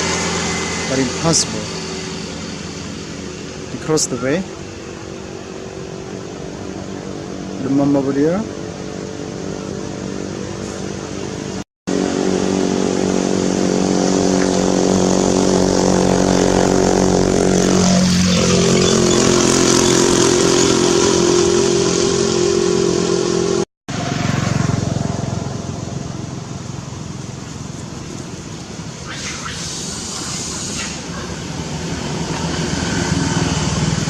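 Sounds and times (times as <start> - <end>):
engine droning: 0.0 - 34.0.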